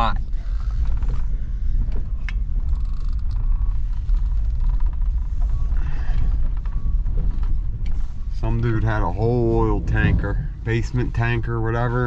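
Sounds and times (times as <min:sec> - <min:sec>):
truck engine rumbling: 0:00.0 - 0:12.0
creaks and clicks: 0:00.2 - 0:08.1.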